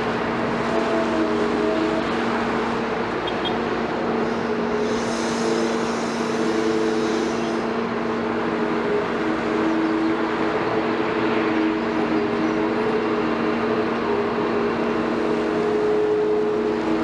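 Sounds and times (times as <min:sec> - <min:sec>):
excavator diesel engine running: 0:00.0 - 0:17.0
hiss: 0:04.3 - 0:07.7.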